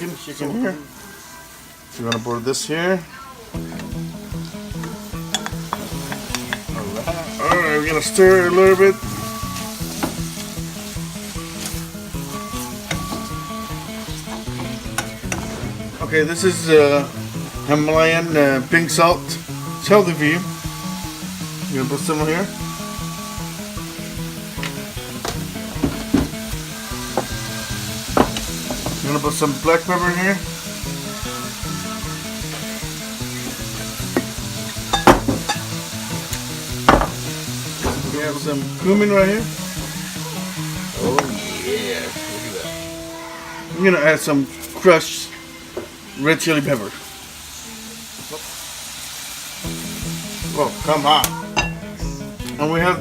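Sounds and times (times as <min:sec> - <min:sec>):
soft background melody: 0:00.0 - 0:48.4
background music: 0:00.0 - 0:53.0
food sizzling in a frying pan: 0:00.0 - 0:53.0
utensil knocking against pan: 0:04.8 - 0:07.6, 0:24.6 - 0:26.5, 0:28.1 - 0:29.1, 0:34.1 - 0:35.7, 0:36.9 - 0:38.2.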